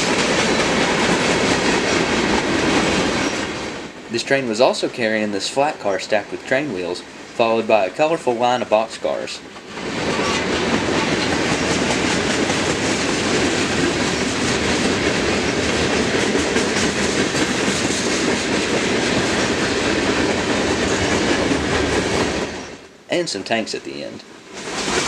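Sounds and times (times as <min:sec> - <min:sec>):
wheels clattering over rail joints: 0:00.0 - 0:04.0
freight train cars rolling past: 0:00.0 - 0:25.0.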